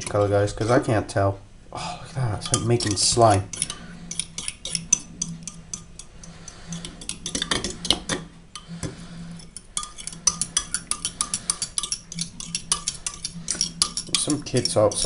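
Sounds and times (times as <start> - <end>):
whisk clicking against bowl: 2.4 - 8.2, 9.6 - 15.0.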